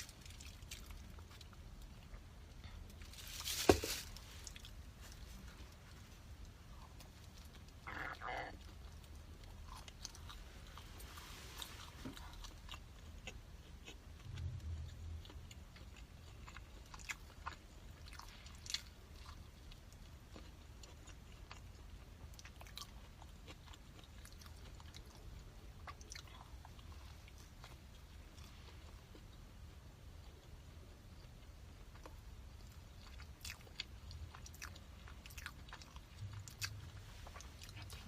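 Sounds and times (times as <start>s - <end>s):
person chewing food: 0.0s - 38.0s.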